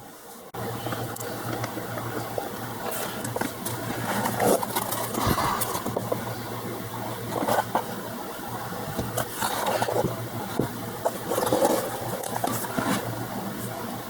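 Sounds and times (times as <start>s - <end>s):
low steady hum: 0.0s - 14.0s
cardboard cards scraping and rustling: 11.0s - 13.2s.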